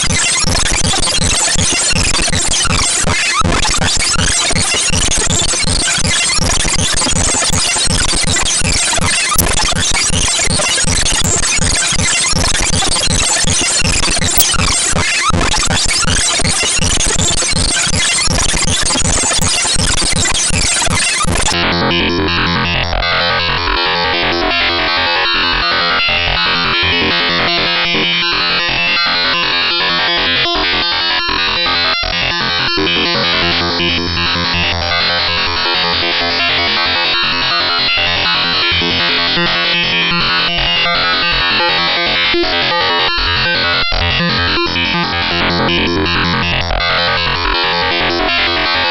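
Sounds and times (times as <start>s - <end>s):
glitchy synthesized noise with sweeps: 0.0s - 21.6s
buzzy repeating electronic pattern: 0.0s - 23.4s, 43.5s - 48.8s.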